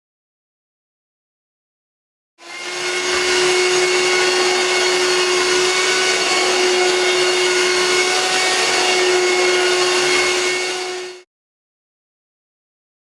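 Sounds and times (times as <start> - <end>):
vacuum cleaner whirring: 2.4 - 11.3.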